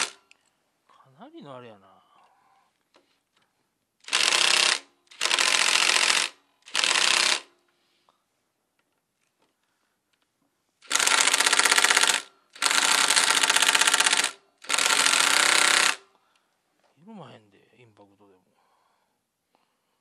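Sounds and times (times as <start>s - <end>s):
impact driver hammering: 10.9s - 16.0s.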